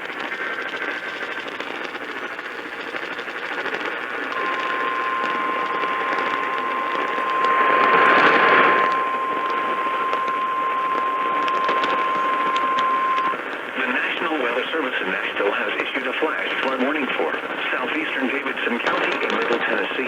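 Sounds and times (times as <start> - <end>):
radio static hiss: 0.0 - 20.0
steady alarm beep: 4.4 - 13.5.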